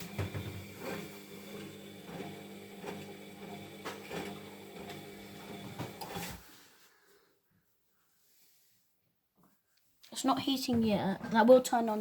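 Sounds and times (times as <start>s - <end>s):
washing machine motor hum: 0.0s - 6.4s.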